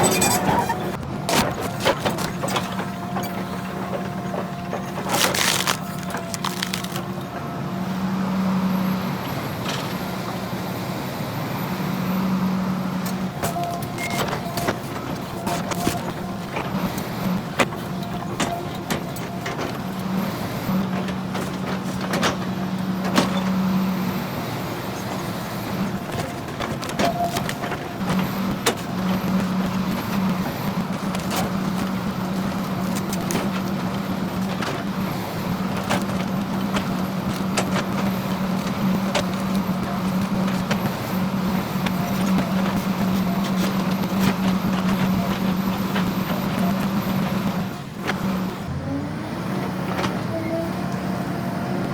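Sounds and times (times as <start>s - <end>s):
excavator engine droning: 0.0s - 51.9s
stump shear cracking wood: 4.7s - 7.2s, 13.1s - 23.7s, 25.1s - 48.4s.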